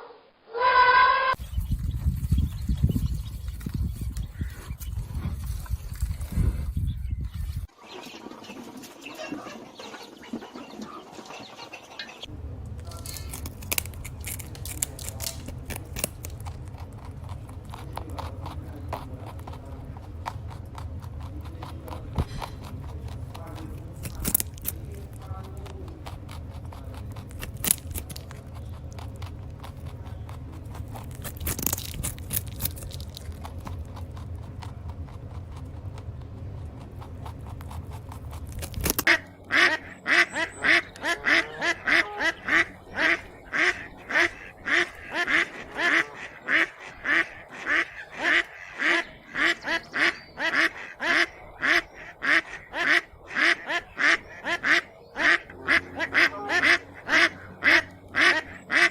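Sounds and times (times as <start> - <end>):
low rumbling noise: 0.0 - 7.7, 12.1 - 58.9
scattered clicks: 12.7 - 39.2
duck quacking: 39.0 - 58.9.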